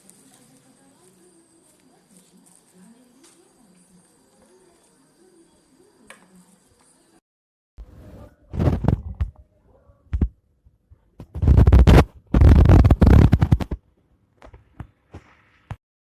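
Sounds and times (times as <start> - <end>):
scraping and rubbing handling noise: 0.0 - 7.1, 7.9 - 9.4, 11.2 - 13.8.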